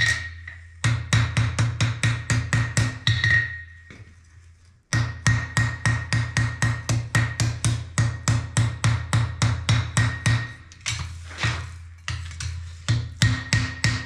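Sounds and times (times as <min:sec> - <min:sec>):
hammer ringing on anvil: 0:00.0 - 0:00.6, 0:02.3 - 0:03.9.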